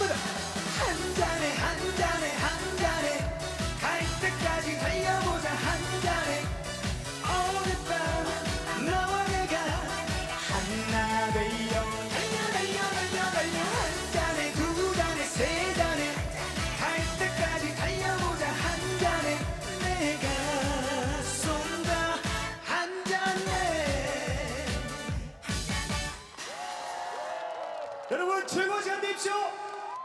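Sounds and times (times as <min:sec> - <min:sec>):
live song over backing track: 0:00.0 - 0:26.2.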